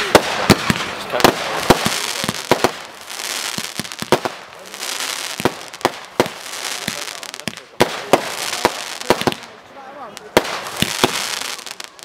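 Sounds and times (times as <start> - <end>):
firework barrage bangs: 0.0 - 9.6, 10.2 - 12.0.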